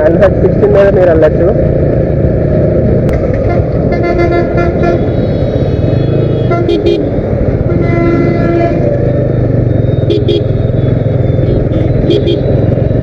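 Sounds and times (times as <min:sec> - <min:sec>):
motorcycle rumble: 0:00.0 - 0:13.0
wind: 0:00.0 - 0:13.0
vehicle horns honking: 0:03.4 - 0:12.7.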